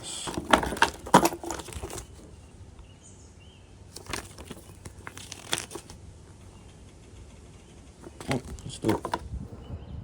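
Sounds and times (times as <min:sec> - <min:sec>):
packaging rustling: 0:00.0 - 0:02.2, 0:03.9 - 0:06.0.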